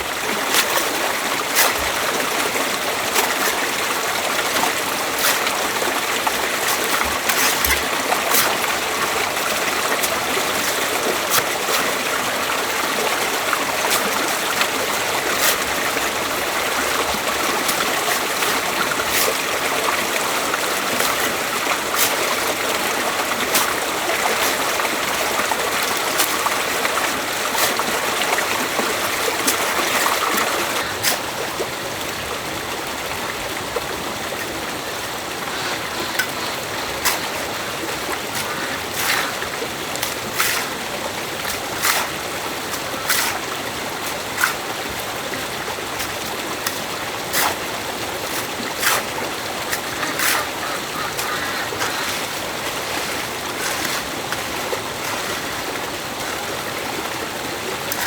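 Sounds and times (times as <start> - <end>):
stream running: 0.0 - 58.0.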